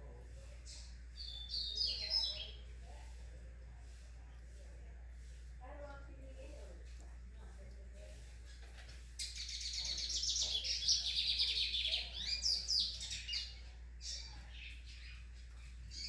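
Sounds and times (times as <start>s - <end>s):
songbird trilling chirps: 0.6s - 2.7s, 9.2s - 16.0s.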